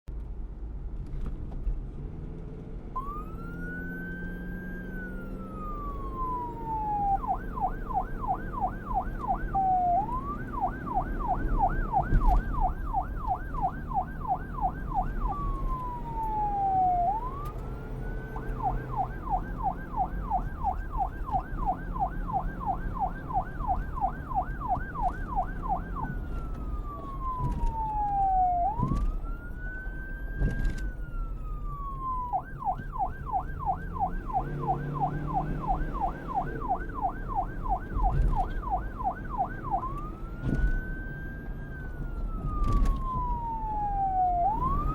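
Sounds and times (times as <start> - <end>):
traffic rumble: 0.1 - 44.9
electronic siren wailing and yelping: 3.0 - 44.9.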